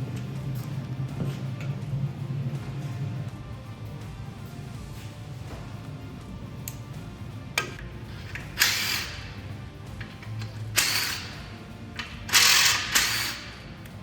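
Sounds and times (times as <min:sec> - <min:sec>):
background music: 0:00.0 - 0:14.0
power tool bursts: 0:12.3 - 0:13.5.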